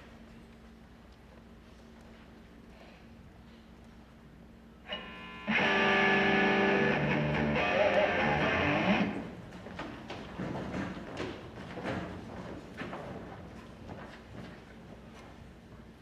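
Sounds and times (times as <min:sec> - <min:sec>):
distorted electric guitar: 0:04.9 - 0:09.3.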